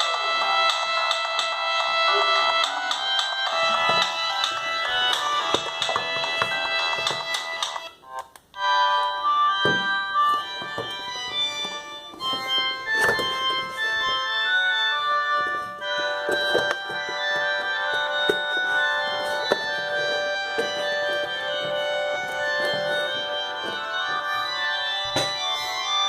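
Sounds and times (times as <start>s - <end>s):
polyphonic ringtone melody: 0.0s - 26.0s.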